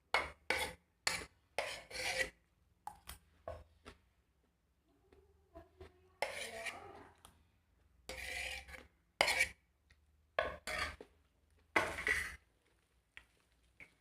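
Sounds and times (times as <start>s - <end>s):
utensil scraping and clinking plate: 0.2s - 2.4s, 6.2s - 7.1s, 8.1s - 9.6s, 10.4s - 11.1s, 11.8s - 12.4s.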